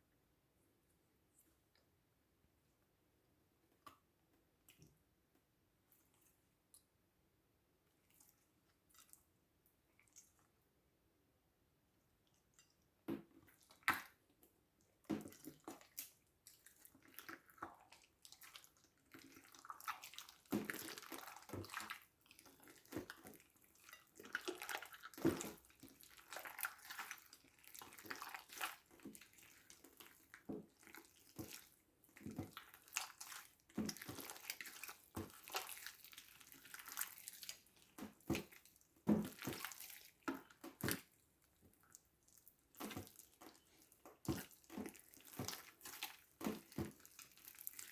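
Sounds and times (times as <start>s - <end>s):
slime squelching and popping: 12.3s - 47.9s.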